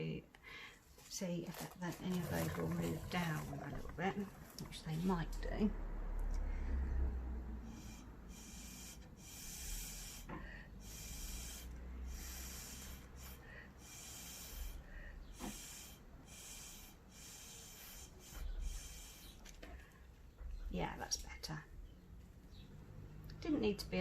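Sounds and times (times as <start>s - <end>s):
puffs of breath blowing: 6.4s - 20.1s.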